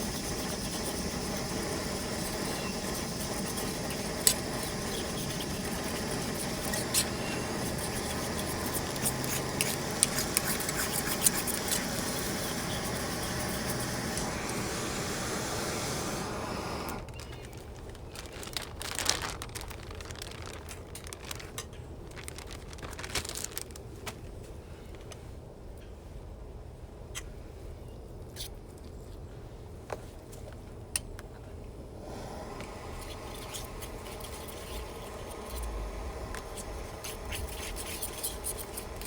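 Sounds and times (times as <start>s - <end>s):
food sizzling in a skillet: 0.0s - 16.9s.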